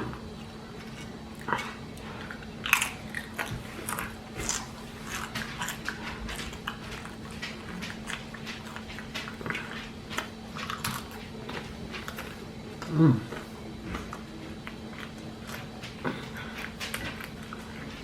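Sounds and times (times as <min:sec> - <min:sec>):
person chewing crunchy food: 0:00.0 - 0:18.0.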